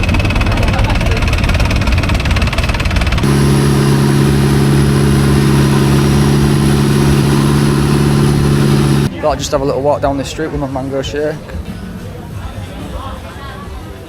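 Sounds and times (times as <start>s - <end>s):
boat engine running loudly: 0.0s - 9.1s.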